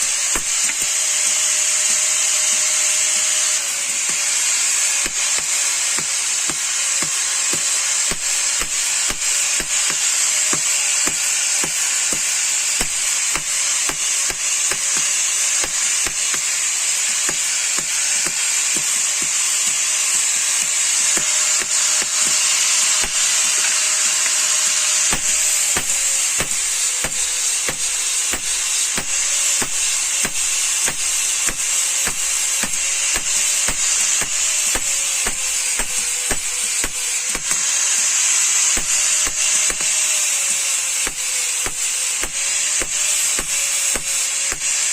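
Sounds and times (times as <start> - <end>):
steady hiss: 0.0 - 44.9
motor hum: 5.0 - 37.7
hammer blows on steel: 20.6 - 37.6.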